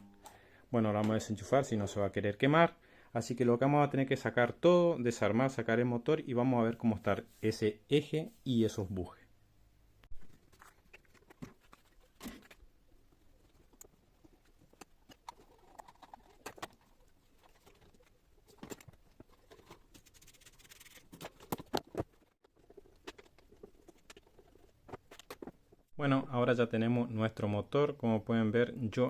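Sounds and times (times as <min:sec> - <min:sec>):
plastic parts and screws handled: 0:10.1 - 0:25.9.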